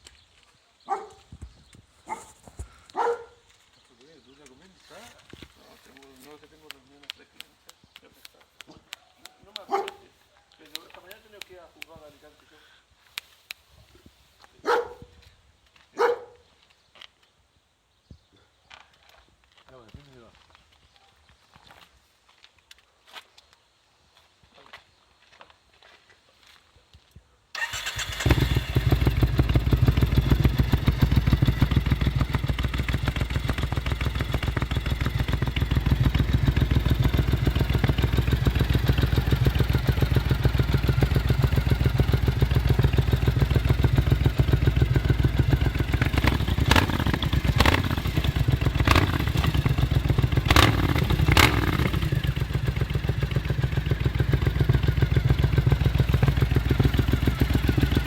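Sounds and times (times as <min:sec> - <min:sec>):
engine cranking: 0:27.6 - 0:54.3
motorcycle engine idling: 0:27.6 - 0:58.0.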